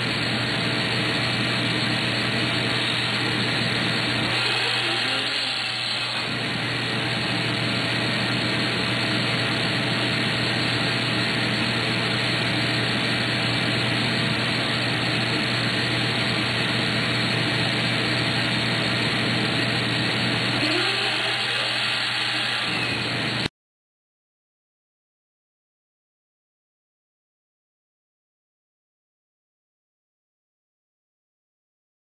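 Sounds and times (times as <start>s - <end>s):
vacuum cleaner running: 0.0s - 23.5s.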